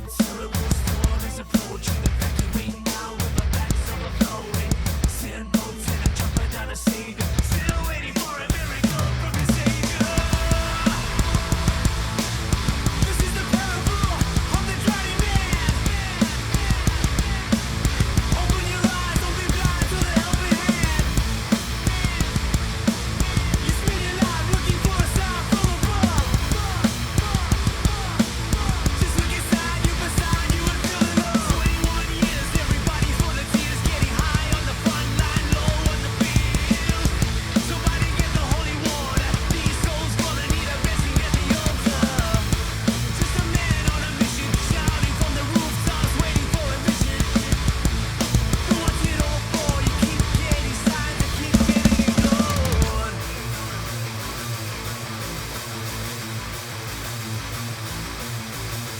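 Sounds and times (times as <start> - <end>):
bass guitar: 0.0 - 58.9
distorted electric guitar: 0.0 - 58.9
drum kit played hard: 0.0 - 58.9
pitch-bending guitar lines: 8.6 - 58.9.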